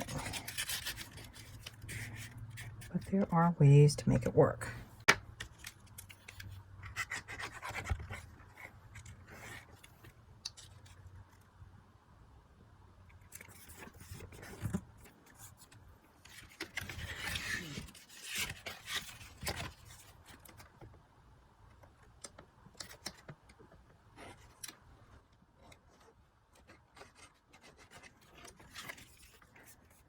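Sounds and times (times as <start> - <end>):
cardstock rubbing and scraping: 0.0 - 3.2.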